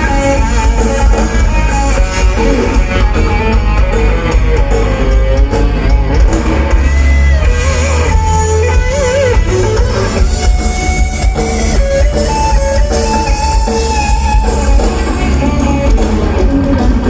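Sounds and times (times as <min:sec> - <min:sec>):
live band music: 0:00.0 - 0:17.0.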